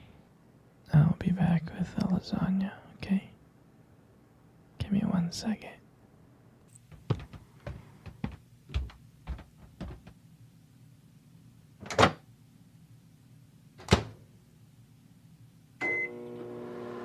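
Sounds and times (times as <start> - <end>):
light footsteps: 6.7 - 10.2.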